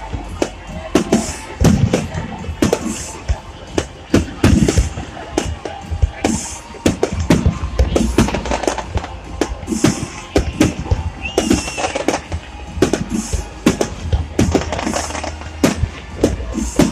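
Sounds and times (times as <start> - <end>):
fireworks crackling: 0.0 - 16.9
firework whistle: 6.2 - 16.9
firework shells bursting: 6.3 - 16.9.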